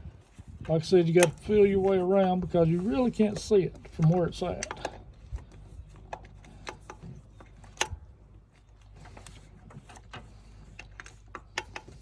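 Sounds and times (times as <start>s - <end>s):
clicks and taps on engine parts: 1.1s - 2.6s, 3.2s - 8.0s, 8.8s - 12.0s.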